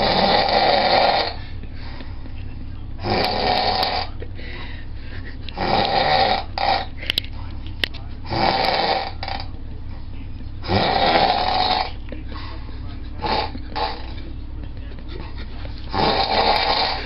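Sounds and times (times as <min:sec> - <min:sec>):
person snoring loudly: 0:00.0 - 0:01.4, 0:03.0 - 0:04.1, 0:05.5 - 0:06.9, 0:08.3 - 0:09.5, 0:10.6 - 0:12.0, 0:13.2 - 0:14.1, 0:15.9 - 0:17.0.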